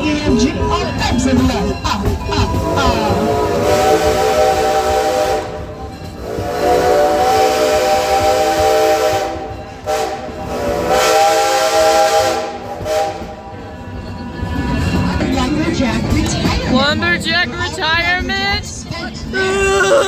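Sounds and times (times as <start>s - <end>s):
steam hissing: 2.2s - 14.0s
steam locomotive whistle: 2.5s - 13.7s.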